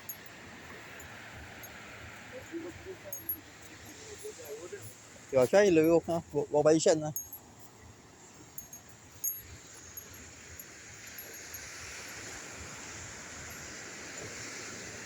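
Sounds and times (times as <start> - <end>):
sea surf washing on shore: 9.0 - 15.0.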